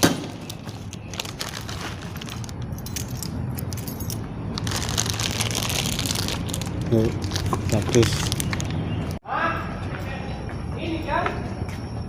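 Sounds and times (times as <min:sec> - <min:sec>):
objects clicking and jingling: 0:00.5 - 0:09.2.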